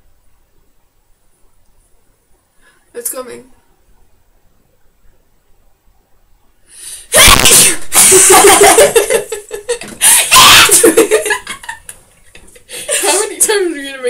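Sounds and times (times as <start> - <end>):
short intake of breath: 6.7 - 7.2
loud sneeze: 7.1 - 8.8, 10.0 - 11.0
loud laughing: 7.2 - 13.4.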